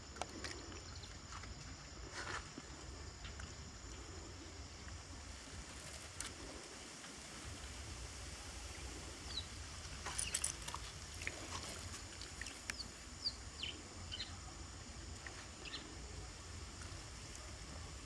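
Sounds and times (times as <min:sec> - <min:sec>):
birds chirping: 0:11.9 - 0:14.5, 0:15.6 - 0:16.0.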